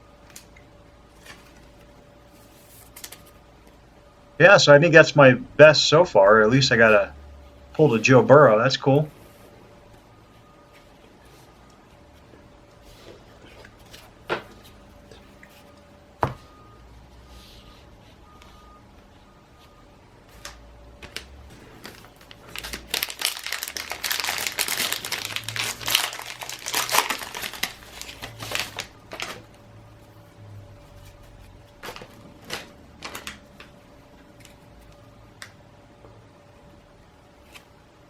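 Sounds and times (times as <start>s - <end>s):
plastic wrapper crinkling: 20.4s - 29.6s, 31.7s - 33.8s.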